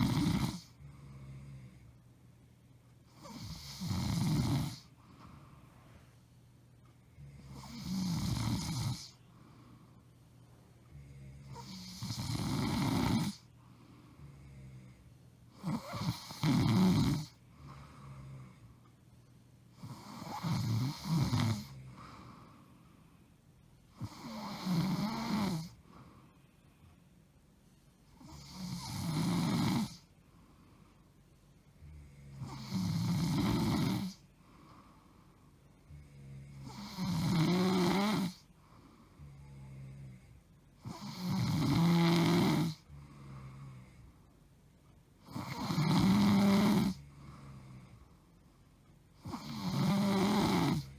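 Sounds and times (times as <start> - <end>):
woman snoring loudly: 0.0 - 1.8, 3.2 - 4.9, 7.2 - 9.2, 11.0 - 13.5, 15.6 - 18.6, 19.8 - 22.2, 24.0 - 25.8, 28.2 - 30.0, 31.8 - 34.2, 35.8 - 38.4, 39.2 - 44.0, 45.2 - 48.0, 49.2 - 50.9
quiet breaths: 0.0 - 50.9.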